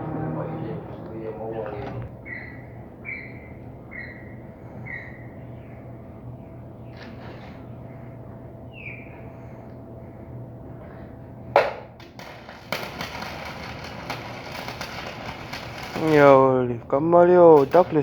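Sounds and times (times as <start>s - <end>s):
crackle of welding arc: 12.0s - 18.0s
welder hum: 12.0s - 18.0s
welding arc strike: 12.0s - 18.0s.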